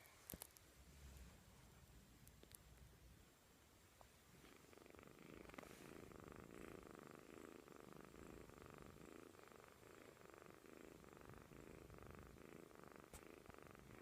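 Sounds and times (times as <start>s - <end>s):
kitten snoring: 4.4s - 14.0s.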